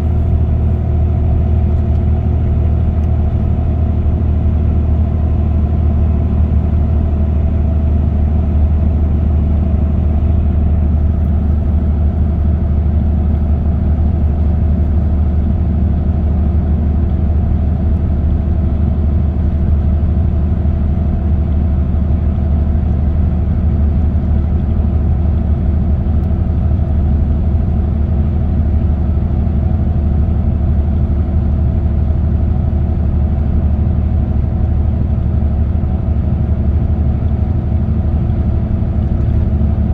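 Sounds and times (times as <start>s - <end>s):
car engine and road drone: 0.0s - 39.9s.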